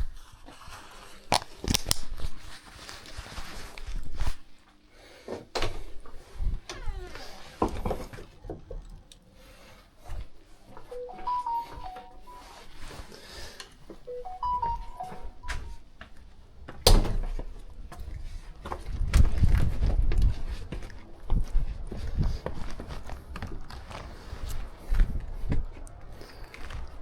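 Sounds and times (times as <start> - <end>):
electronic beeping jingle: 10.9 - 12.7, 14.1 - 15.8.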